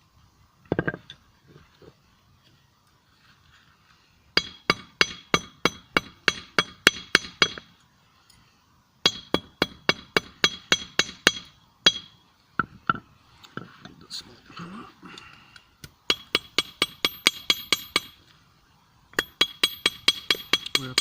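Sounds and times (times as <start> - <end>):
hammer striking metal on anvil: 9.0 - 12.1, 16.1 - 18.2, 19.2 - 21.0.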